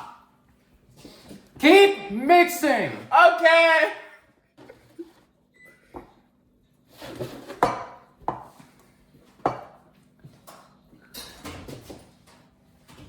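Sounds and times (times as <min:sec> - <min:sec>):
utensil scraping a mixing bowl: 0:06.9 - 0:07.8.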